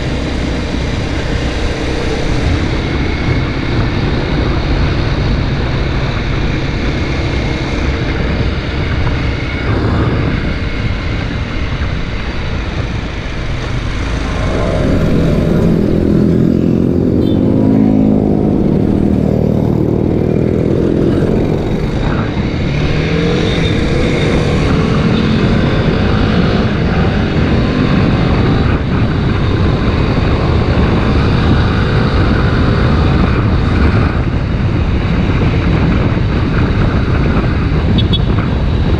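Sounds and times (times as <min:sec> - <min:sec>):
motorcycle engine running: 0:00.0 - 0:38.9
wind noise on microphone: 0:00.0 - 0:38.9.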